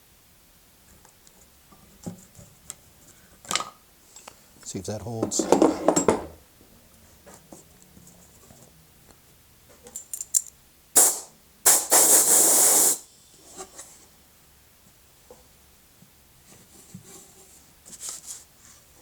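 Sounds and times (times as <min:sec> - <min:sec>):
aerosol can spraying: 0:11.0 - 0:13.0.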